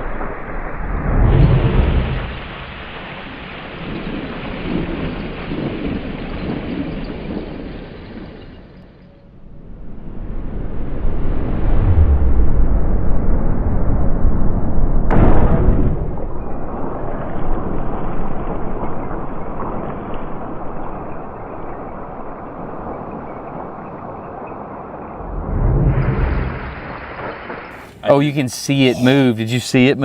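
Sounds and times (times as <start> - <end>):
low rumble: 0.0 - 6.4, 9.3 - 28.0
air cannon sharp crack: 15.1 - 16.6.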